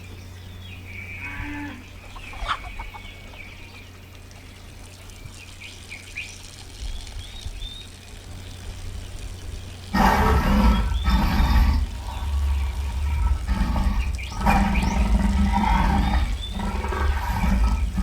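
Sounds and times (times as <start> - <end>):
steady low hum: 9.1 - 18.0.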